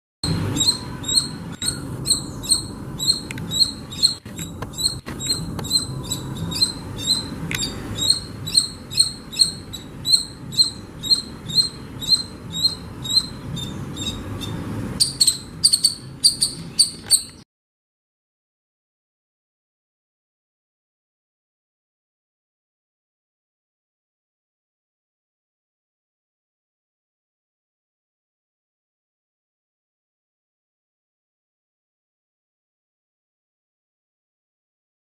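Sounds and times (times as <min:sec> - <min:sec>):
squirrel chirping: 0:00.2 - 0:17.4.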